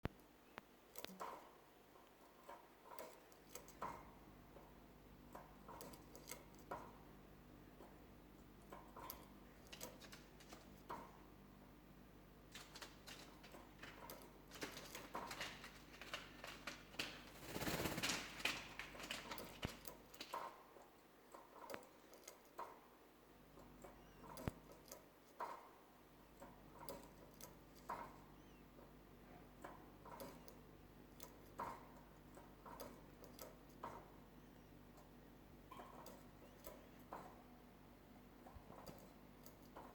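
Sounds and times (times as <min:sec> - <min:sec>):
bird taps and clicks in cage: 0:31.2 - 0:34.1.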